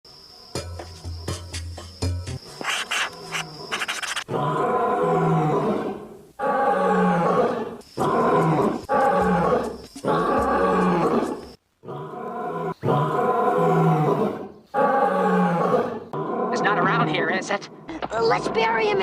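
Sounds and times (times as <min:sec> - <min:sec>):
lion roaring: 0:04.3 - 0:17.8.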